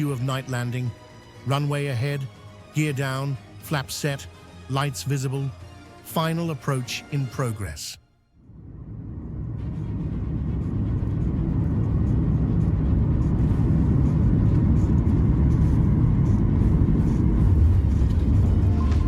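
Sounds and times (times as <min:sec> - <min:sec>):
aircraft rumble: 0:08.4 - 0:19.0.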